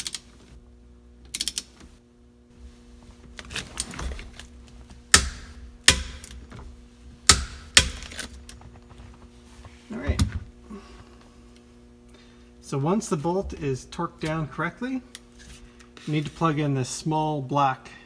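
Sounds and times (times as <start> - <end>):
torque wrench ratchet clicks: 1.3 - 1.7
torque wrench sharp clicks: 1.3 - 1.7.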